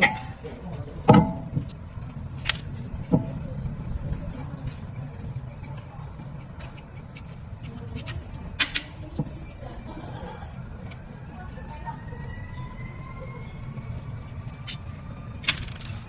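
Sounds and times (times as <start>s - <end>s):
hand tools clicking and knocking: 0.0s - 1.8s, 6.5s - 9.3s, 15.4s - 16.0s
faint high steady tone: 0.0s - 16.0s
low steady hum: 0.0s - 16.0s.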